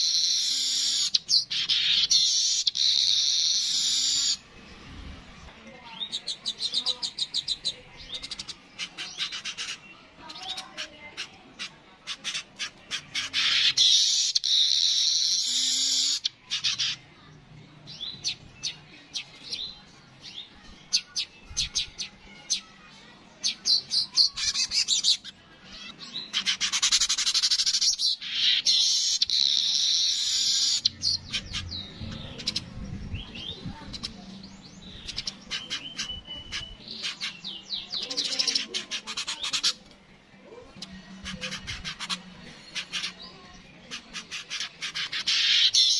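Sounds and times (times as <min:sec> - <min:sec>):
low rumbling: 0:31.0 - 0:35.0.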